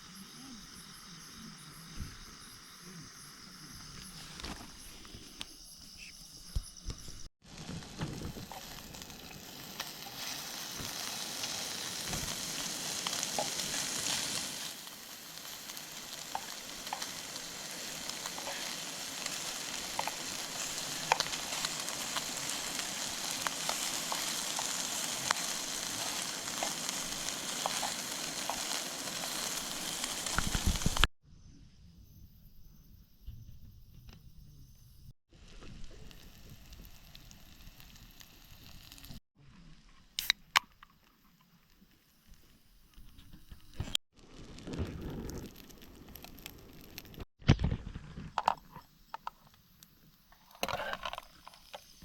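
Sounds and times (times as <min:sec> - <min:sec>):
food sizzling in a pan: 0:07.4 - 0:31.1, 0:35.4 - 0:39.2.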